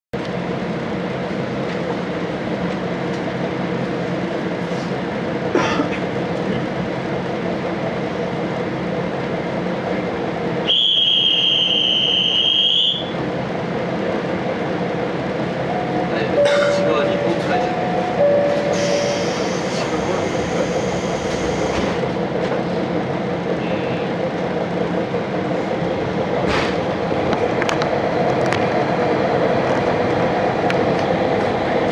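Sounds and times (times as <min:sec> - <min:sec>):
railcar rumble and hum: 0:00.1 - 0:31.9
high-pitched train whistle: 0:10.6 - 0:13.1
train clunk: 0:15.7 - 0:24.8, 0:25.5 - 0:28.7.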